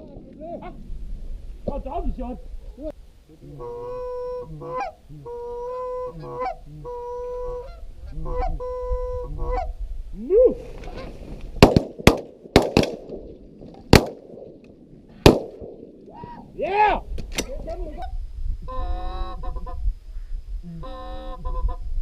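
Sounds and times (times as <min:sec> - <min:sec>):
goose honking: 0:03.4 - 0:09.7
shotgun shots: 0:11.6 - 0:13.3, 0:13.9 - 0:14.6, 0:15.2 - 0:16.0.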